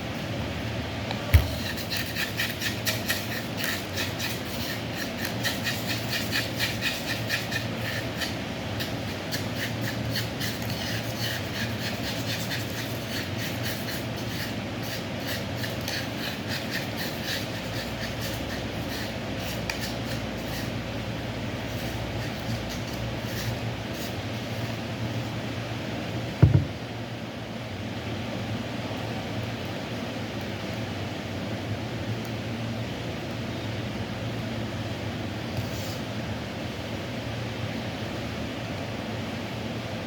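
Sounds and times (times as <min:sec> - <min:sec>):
sharp knock: 0:01.4 - 0:01.7, 0:26.4 - 0:26.8
pestle grinding in a mortar: 0:01.4 - 0:20.7.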